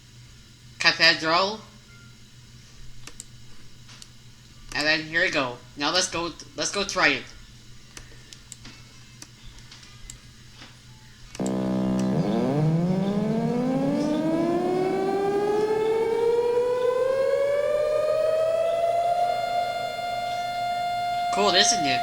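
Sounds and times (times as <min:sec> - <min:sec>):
faint clicks: 0:11.3 - 0:14.2
rapid pulsing tone: 0:11.4 - 0:22.0
synthesized siren winding up: 0:11.4 - 0:22.0.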